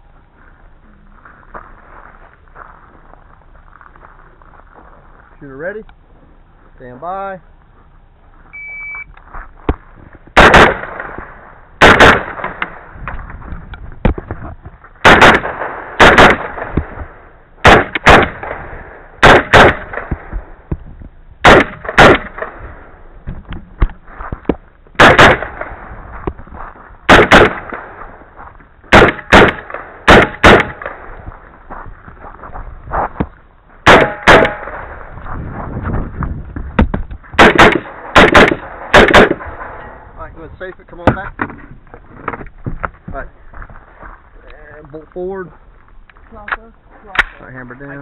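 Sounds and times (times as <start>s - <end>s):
rifle shots echoing: 10.4s - 12.9s, 15.0s - 20.6s, 21.4s - 23.0s, 25.0s - 25.9s, 27.1s - 28.2s, 28.9s - 31.2s, 33.8s - 35.1s, 37.4s - 40.1s.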